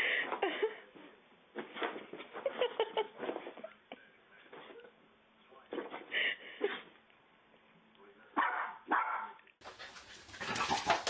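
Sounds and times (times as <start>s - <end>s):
dog barking: 8.4s - 9.5s.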